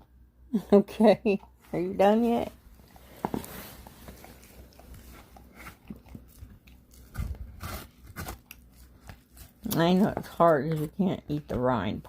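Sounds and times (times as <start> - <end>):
dog chewing watermelon rind: 2.8 - 11.0.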